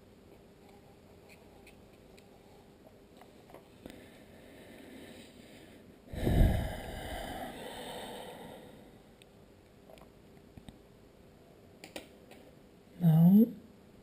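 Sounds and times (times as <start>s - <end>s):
heavy breath close to microphone: 3.9s - 9.2s.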